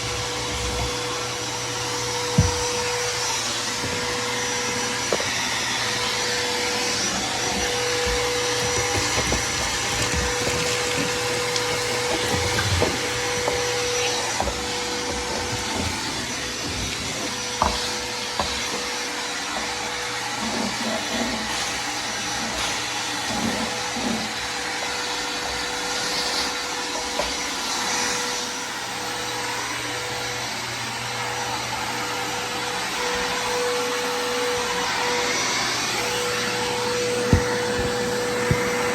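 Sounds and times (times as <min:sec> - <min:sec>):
vacuum cleaner running: 0:00.0 - 0:38.9
knocks on floor: 0:02.3 - 0:02.8, 0:37.2 - 0:38.9.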